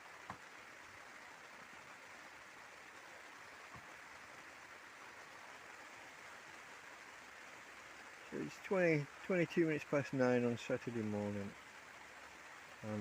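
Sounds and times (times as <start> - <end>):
rain on tent fabric: 0.0 - 13.0.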